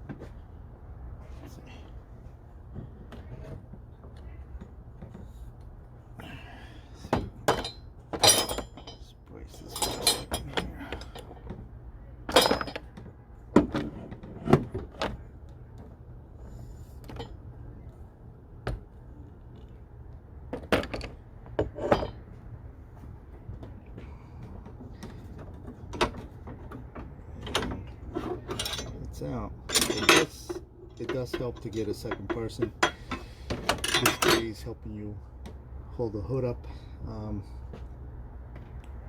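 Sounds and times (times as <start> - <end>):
steady low hum: 0.0 - 39.0
metallic clanks and knocks: 7.2 - 9.1, 12.3 - 13.0, 25.9 - 29.1, 29.7 - 34.5.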